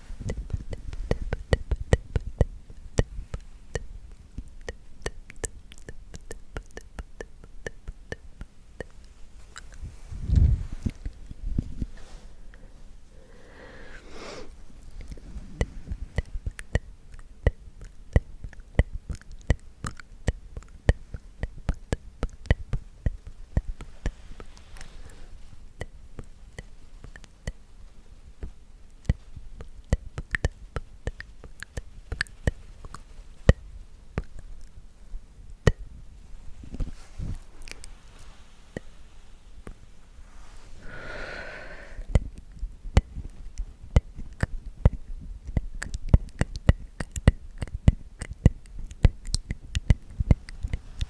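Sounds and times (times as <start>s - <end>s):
wet mouth clicks and smacks: 0.2s - 12.1s, 14.7s - 25.2s, 25.8s - 27.7s, 28.4s - 34.8s, 36.7s - 38.9s, 41.8s - 51.0s
breathy sound: 12.0s - 16.2s, 40.3s - 42.2s.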